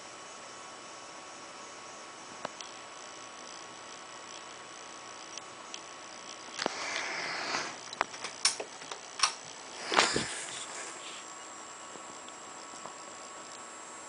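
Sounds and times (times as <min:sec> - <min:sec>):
ceiling fan humming: 0:00.0 - 0:14.0
sharp clicks: 0:07.8 - 0:09.4.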